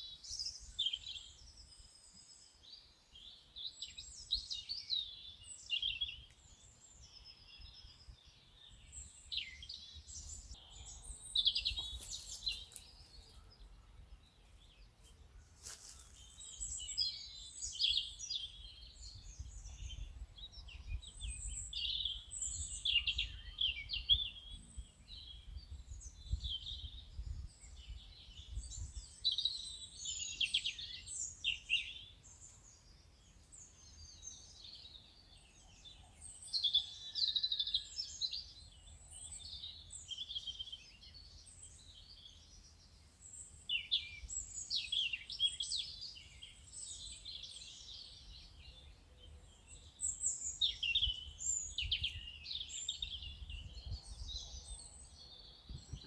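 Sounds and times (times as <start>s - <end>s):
songbirds chirping and trilling: 0.0s - 56.0s.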